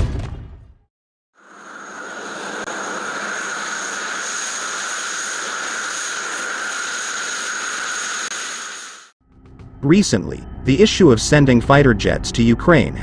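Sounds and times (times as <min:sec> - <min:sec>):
jet engine running: 0:01.4 - 0:09.2.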